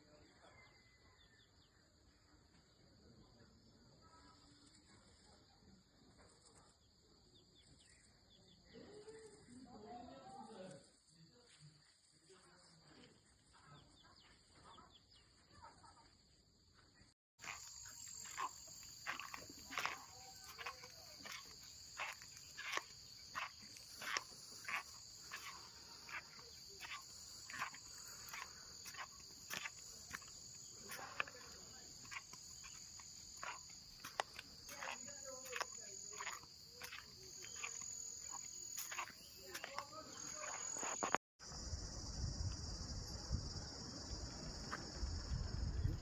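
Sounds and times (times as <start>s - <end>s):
crickets chirping chorus: 17.4s - 46.0s.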